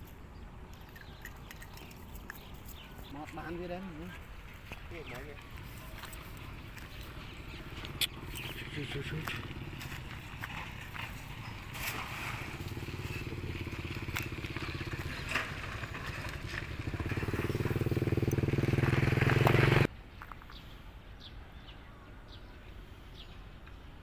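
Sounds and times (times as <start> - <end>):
small engine running: 5.5 - 19.9.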